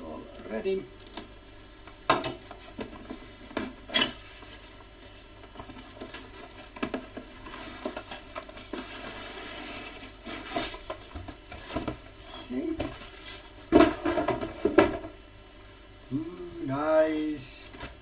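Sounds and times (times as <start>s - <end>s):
cardboard and plastic packaging rustling: 2.6s - 15.1s.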